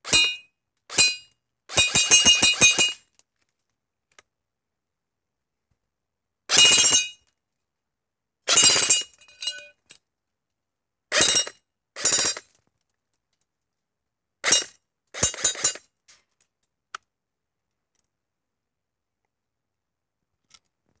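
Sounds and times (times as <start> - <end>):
brief metallic ring: 9.2 - 9.7.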